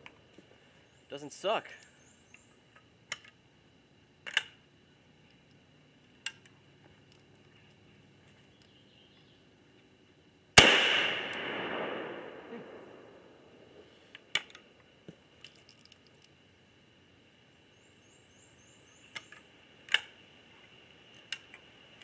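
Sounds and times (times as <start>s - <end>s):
shotgun shot echoing: 10.6s - 13.7s.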